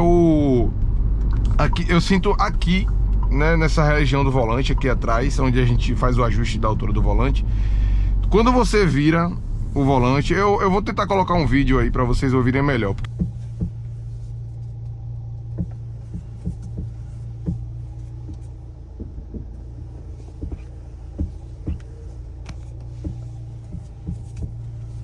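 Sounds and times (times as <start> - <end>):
car engine idling: 0.0 - 25.0
steering clicking and knocking: 13.0 - 25.0.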